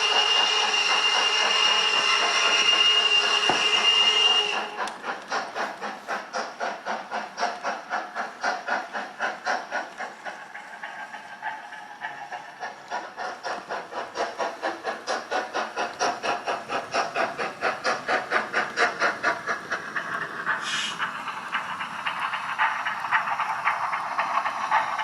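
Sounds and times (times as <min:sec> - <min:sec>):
steam locomotive chuffing: 0:00.0 - 0:25.0
sharp high hiss: 0:20.6 - 0:21.0.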